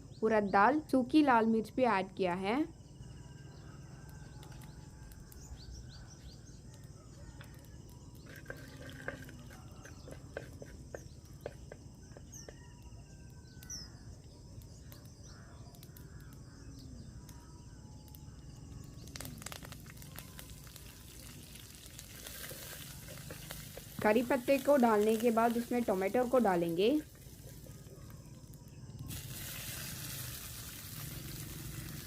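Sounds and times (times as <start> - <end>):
birds chirping: 2.2 - 32.0
seeds crackling in hot oil: 3.7 - 32.0
leaves sizzling in oil: 8.2 - 12.4, 18.8 - 32.0.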